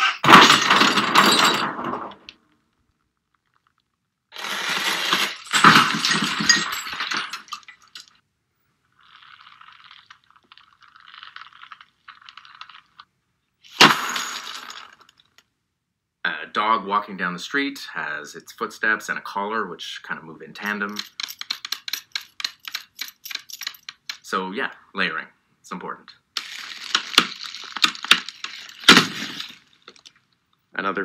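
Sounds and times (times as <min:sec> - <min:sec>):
light metallic jingling and tapping: 0:20.9 - 0:24.2.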